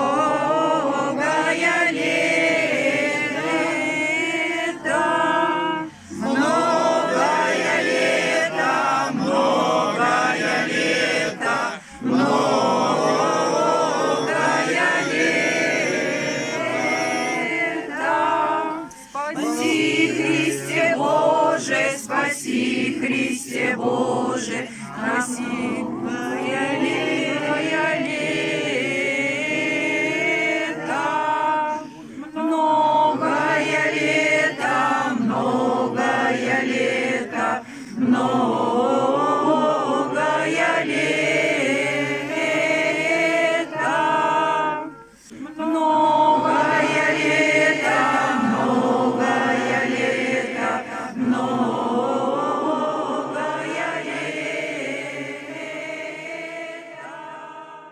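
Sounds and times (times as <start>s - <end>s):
choir singing a chant: 0.0s - 57.9s.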